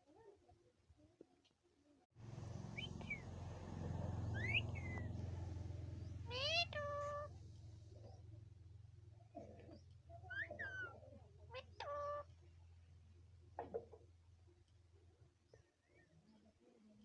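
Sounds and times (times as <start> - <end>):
steady low hum: 2.2 - 9.4
parrot calling: 2.4 - 7.4, 10.3 - 12.3.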